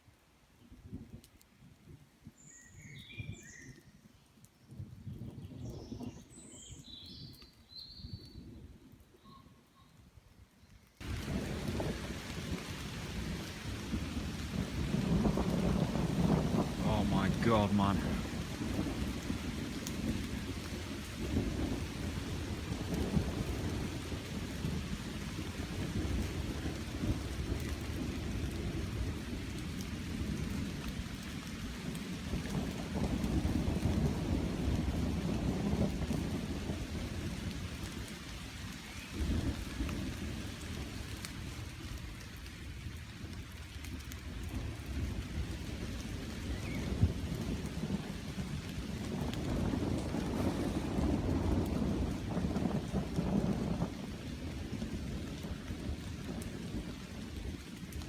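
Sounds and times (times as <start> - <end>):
steady rain: 10.9 - 58.0
rolling thunder: 11.0 - 31.0, 31.8 - 37.9, 44.4 - 58.0.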